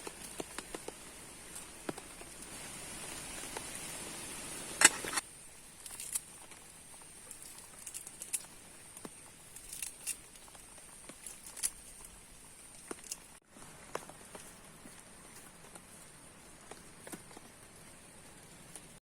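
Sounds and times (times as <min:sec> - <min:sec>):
rain taps and drips: 0:00.0 - 0:05.0
steady high hiss: 0:00.0 - 0:19.0.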